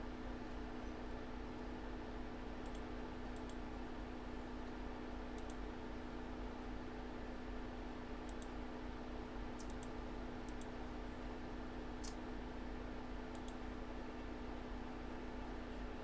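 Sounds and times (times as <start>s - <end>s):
electrical hum: 0.0s - 16.0s
light clicks: 2.6s - 3.6s, 5.4s - 5.6s, 8.3s - 8.6s, 9.6s - 10.7s, 12.0s - 12.2s, 13.3s - 13.6s.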